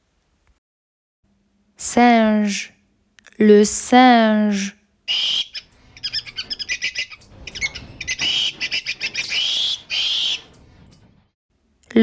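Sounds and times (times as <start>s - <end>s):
monkey chattering calls: 5.1s - 10.6s.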